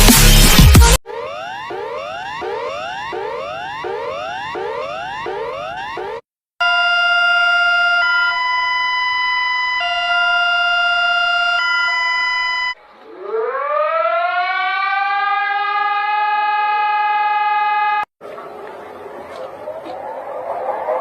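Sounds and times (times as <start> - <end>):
siren winding up: 0.6 - 18.1
two-tone electronic alarm: 1.0 - 18.1.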